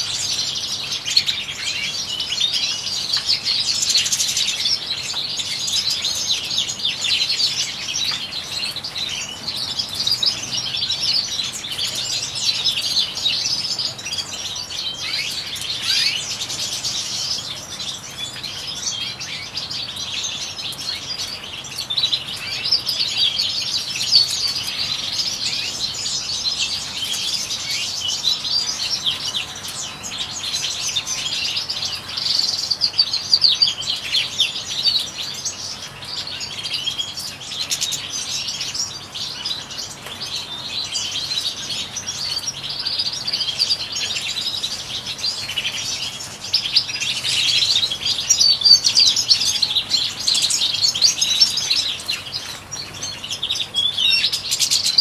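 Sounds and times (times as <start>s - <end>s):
finches chirping and twittering: 0.0s - 55.0s.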